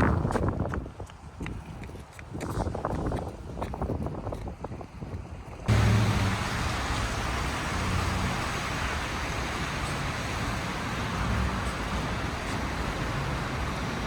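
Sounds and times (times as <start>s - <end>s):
street traffic noise: 5.6s - 14.0s
low vehicle engine hum: 5.7s - 14.0s.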